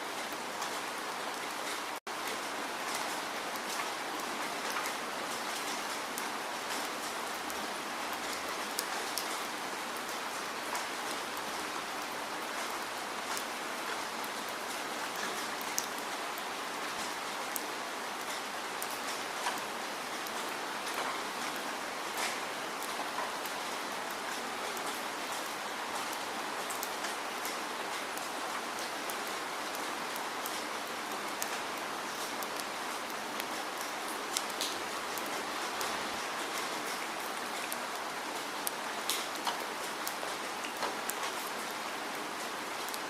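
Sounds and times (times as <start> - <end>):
steady rainfall hiss: 0.0 - 43.0
raindrops ticking: 15.2 - 41.9.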